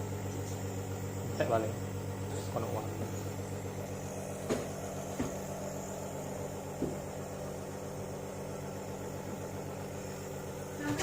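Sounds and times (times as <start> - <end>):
nebuliser compressor humming: 0.0 - 11.0
faint knocks: 6.7 - 7.1.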